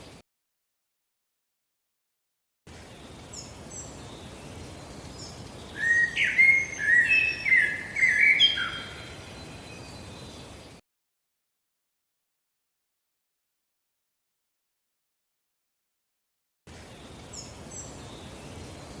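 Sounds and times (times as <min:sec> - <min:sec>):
outdoor hiss: 0:00.0 - 0:00.2, 0:02.7 - 0:10.8, 0:16.7 - 0:19.0
bird singing loud clear phrases: 0:02.7 - 0:10.8, 0:16.7 - 0:19.0
songbirds chirping: 0:02.7 - 0:10.8, 0:16.7 - 0:19.0.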